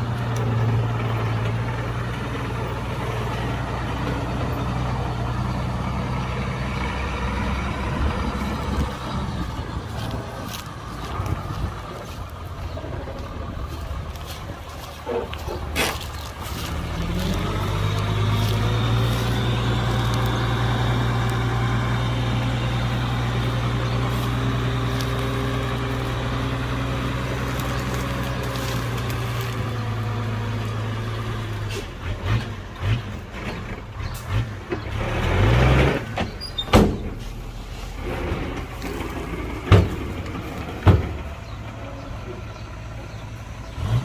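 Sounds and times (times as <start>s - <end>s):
heavy diesel engine revving: 0.0s - 44.0s.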